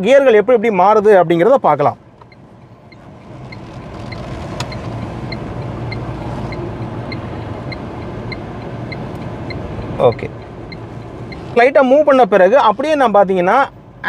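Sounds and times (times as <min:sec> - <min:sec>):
car engine hum: 0:00.0 - 0:14.0
road noise: 0:00.0 - 0:14.0
turn signal ticking: 0:02.0 - 0:13.1.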